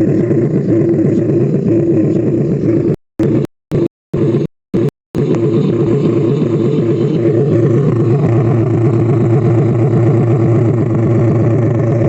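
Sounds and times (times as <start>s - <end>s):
speaker playing low bass rumble: 0.0s - 12.0s.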